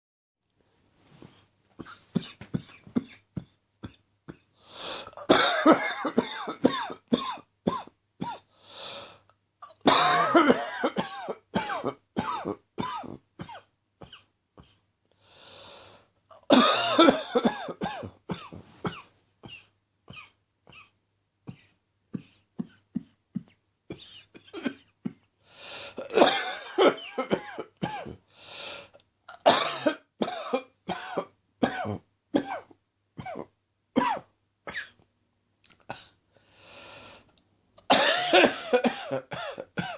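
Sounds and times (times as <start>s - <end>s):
person coughing: 1.8s - 8.5s, 9.6s - 14.8s, 16.3s - 25.3s, 25.9s - 28.2s, 29.3s - 35.0s, 37.8s - 39.9s
person breathing: 4.5s - 5.2s, 8.5s - 9.3s, 15.1s - 16.2s, 25.4s - 26.1s, 28.2s - 29.0s, 35.9s - 37.4s.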